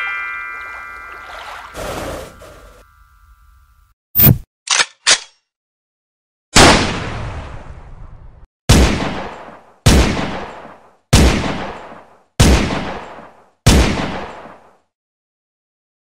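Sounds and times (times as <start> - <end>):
pistol shots: 8.7 - 14.6.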